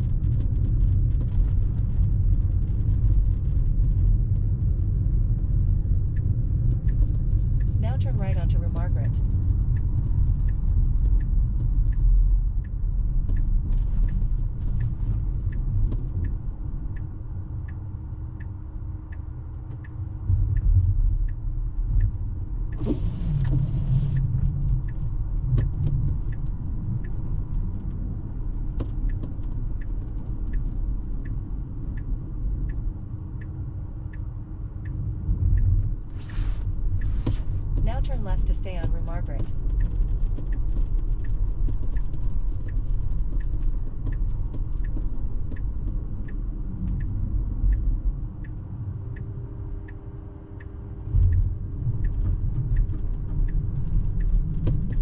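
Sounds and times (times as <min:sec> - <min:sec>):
turn signal ticking: 0:00.0 - 0:55.0
tyre and road noise rumble: 0:00.0 - 0:55.0.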